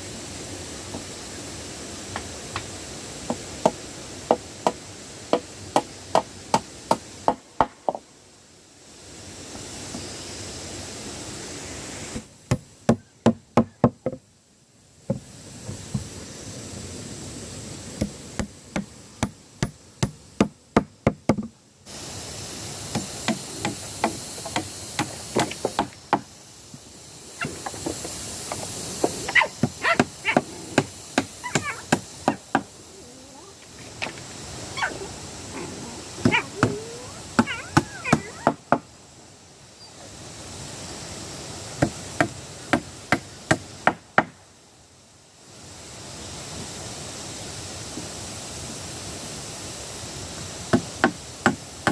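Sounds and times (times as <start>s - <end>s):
sharp knocks on wood: 3.3s - 8.0s, 12.5s - 14.2s, 18.0s - 21.5s.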